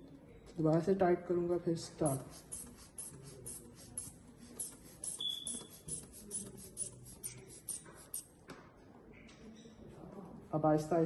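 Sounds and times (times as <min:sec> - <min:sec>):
thin squeak: 0:05.0 - 0:06.0.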